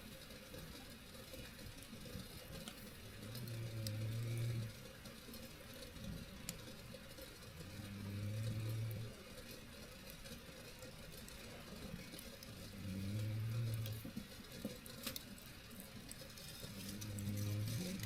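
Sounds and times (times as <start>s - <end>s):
campfire crackles: 0.0s - 18.0s
low snores: 3.1s - 4.9s, 7.6s - 9.2s, 12.5s - 14.2s, 16.6s - 18.0s.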